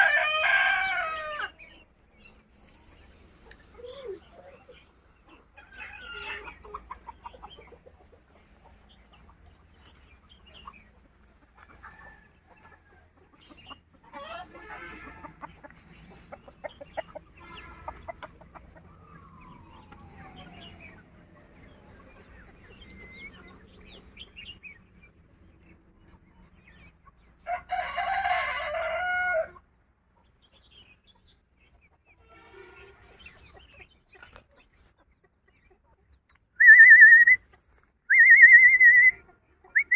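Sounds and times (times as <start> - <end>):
rooster crowing: 0.0 - 1.6, 27.5 - 29.6
chickens clucking: 0.0 - 39.9.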